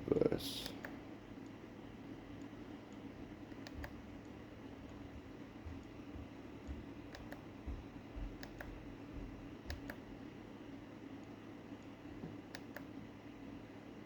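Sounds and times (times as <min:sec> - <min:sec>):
steady low hum: 0:00.0 - 0:14.0
faint sharp clicks: 0:02.4 - 0:04.0.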